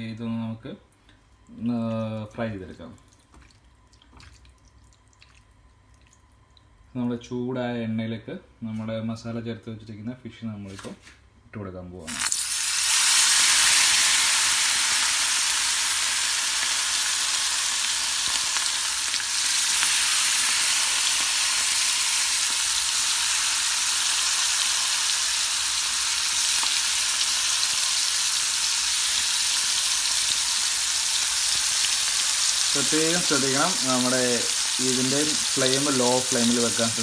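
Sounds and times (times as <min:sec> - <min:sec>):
fish sizzling in hot oil: 0:12.1 - 0:37.0.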